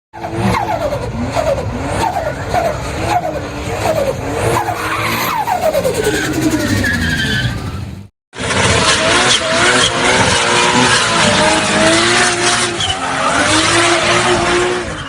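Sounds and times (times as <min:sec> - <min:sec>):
car engine revving: 0:00.2 - 0:15.0.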